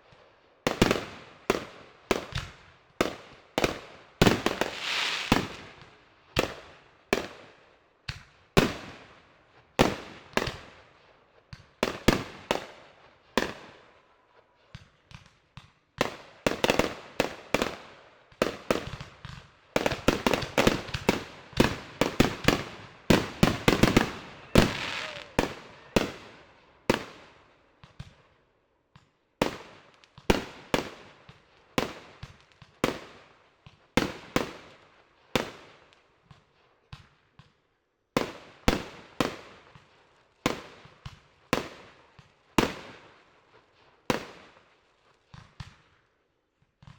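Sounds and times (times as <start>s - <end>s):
fireworks bangs: 3.6s - 5.8s, 18.5s - 27.3s.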